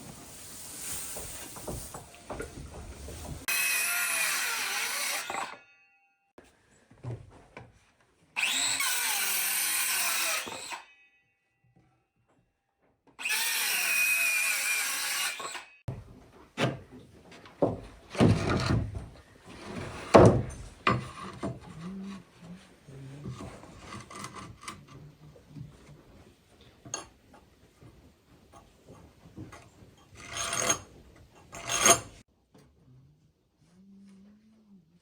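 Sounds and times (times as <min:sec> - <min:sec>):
tools knocking and scraping wood: 0:01.0 - 0:03.6, 0:15.4 - 0:32.8
power tool running: 0:08.4 - 0:10.8, 0:13.2 - 0:15.7.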